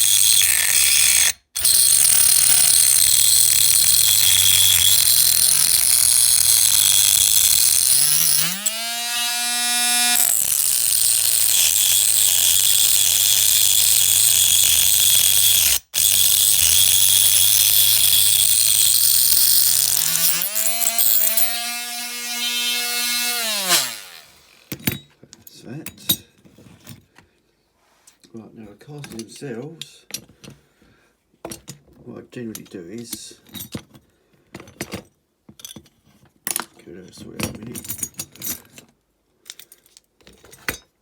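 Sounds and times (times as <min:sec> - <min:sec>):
power tool grinding metal: 0:00.0 - 0:24.7.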